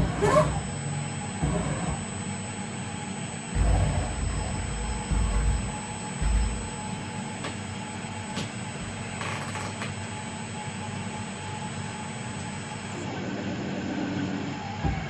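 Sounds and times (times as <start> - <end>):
mill machine hum and whine: 0.0 - 15.0.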